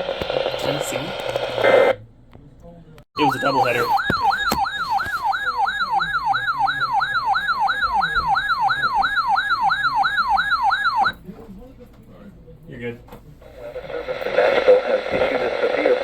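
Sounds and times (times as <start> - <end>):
siren-like alert tone: 3.2 - 11.2.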